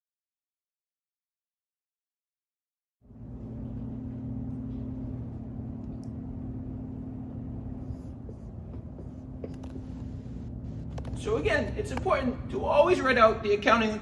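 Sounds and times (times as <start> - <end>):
low electrical hum: 3.0 - 14.0.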